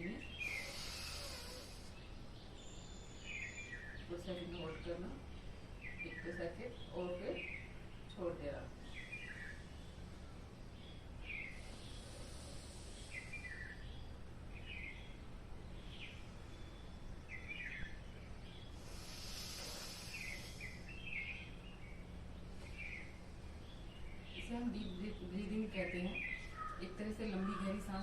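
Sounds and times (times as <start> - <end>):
small birds chirping: 0.0 - 28.0
steady low hum: 0.0 - 28.0
breath hissing through nose: 0.4 - 2.1, 11.5 - 13.8, 18.7 - 20.9.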